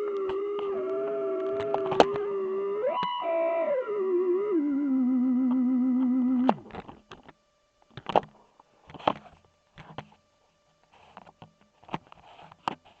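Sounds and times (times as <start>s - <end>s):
faint steady tone: 0.0s - 6.6s
wavering synthesizer drone: 0.0s - 6.6s.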